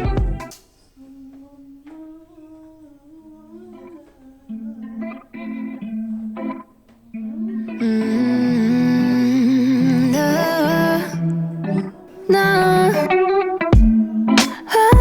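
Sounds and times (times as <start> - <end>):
plucked guitar: 0.0 - 0.6, 1.9 - 15.0
soft hummed vocal: 7.7 - 13.1.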